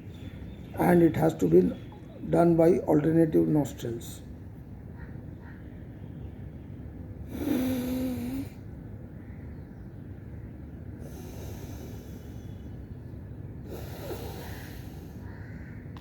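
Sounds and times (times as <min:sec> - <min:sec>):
forceful breathing through nose: 0:11.0 - 0:13.0, 0:13.6 - 0:15.4.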